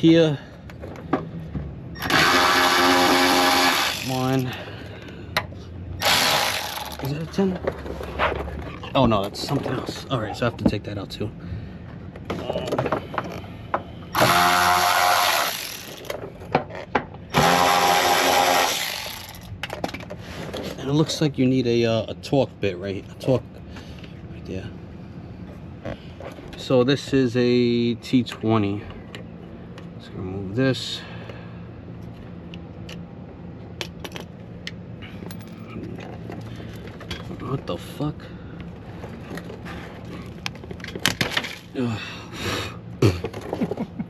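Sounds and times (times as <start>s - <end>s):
steady low hum: 0.0s - 44.0s
cordless power tool spinning: 2.0s - 4.4s, 6.0s - 7.0s, 14.2s - 16.1s, 17.3s - 19.5s.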